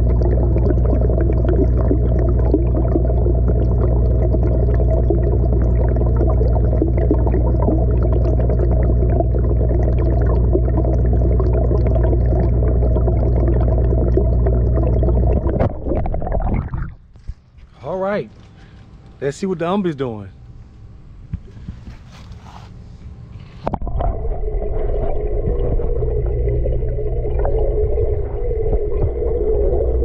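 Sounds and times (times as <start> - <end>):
muffled underwater water rush: 0.0 - 17.1, 23.7 - 30.0
constant low hum: 0.0 - 30.0.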